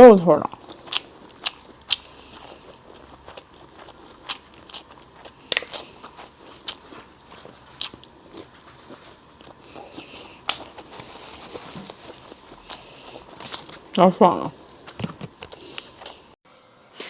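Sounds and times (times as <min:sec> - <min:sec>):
chewing mouth sounds: 0:00.5 - 0:13.8.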